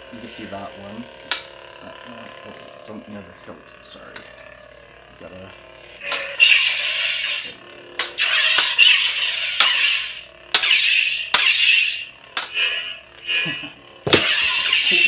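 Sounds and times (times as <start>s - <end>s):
lightsaber clash crackling buzz: 1.3s - 1.7s, 5.9s - 15.0s.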